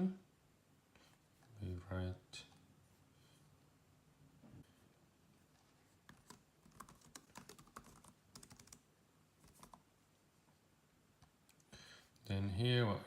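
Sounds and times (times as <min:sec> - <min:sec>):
computer keyboard typing: 0:06.1 - 0:08.8, 0:09.4 - 0:09.8.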